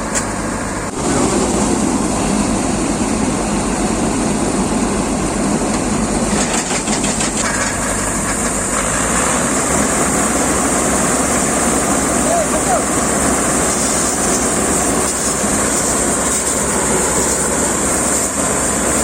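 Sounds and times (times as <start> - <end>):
harvester engine and machinery: 0.0 - 19.0
rapid clatter: 6.3 - 9.0.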